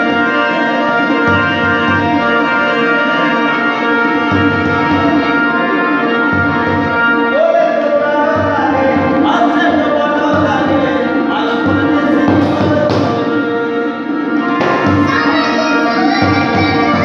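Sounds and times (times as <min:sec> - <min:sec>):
held instrumental tones: 0:00.0 - 0:17.0
steady drum beat: 0:03.1 - 0:07.2, 0:08.3 - 0:13.4
person singing: 0:07.0 - 0:17.0.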